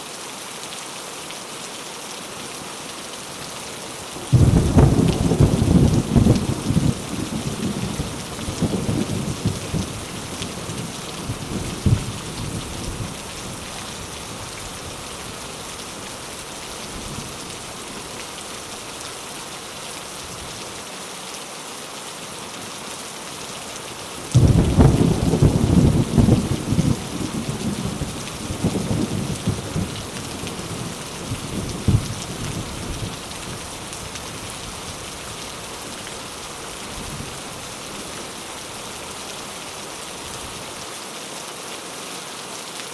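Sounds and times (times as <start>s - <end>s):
steady rain: 0.0s - 42.9s
low thunder rumble: 4.3s - 15.0s, 24.4s - 33.6s.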